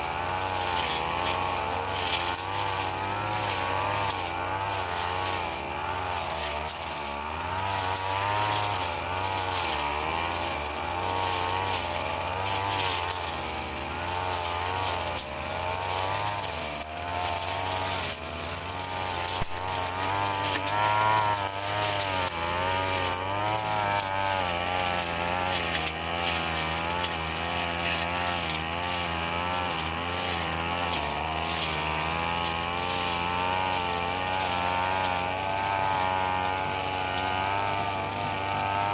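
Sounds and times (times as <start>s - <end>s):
brush cutter engine cutting grass: 0.0s - 38.9s.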